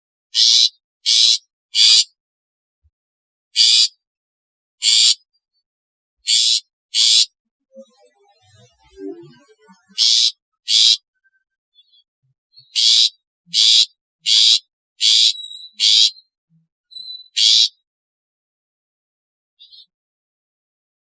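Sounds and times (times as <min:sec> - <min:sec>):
bird giving harsh raspy calls: 0:00.3 - 0:02.2, 0:03.6 - 0:04.0, 0:04.8 - 0:05.2, 0:06.3 - 0:07.3, 0:10.0 - 0:11.0, 0:12.6 - 0:16.2, 0:16.9 - 0:17.8.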